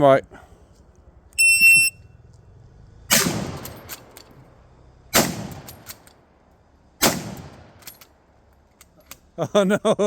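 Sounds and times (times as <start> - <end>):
rifle shots echoing: 3.1 - 3.8, 5.2 - 5.8, 7.0 - 7.8.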